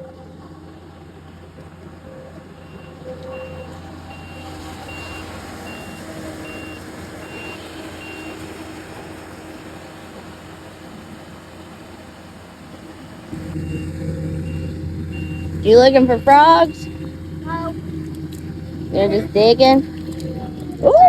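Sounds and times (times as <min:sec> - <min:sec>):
vehicle engine running: 0:00.0 - 0:21.0
reverse warning alarm beeping: 0:01.5 - 0:11.6, 0:12.9 - 0:17.8.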